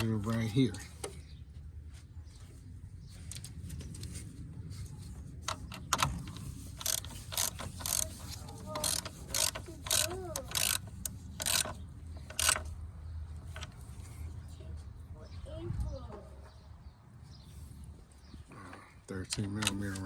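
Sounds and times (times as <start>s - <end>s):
socket ratchet clicking: 5.5s - 12.7s.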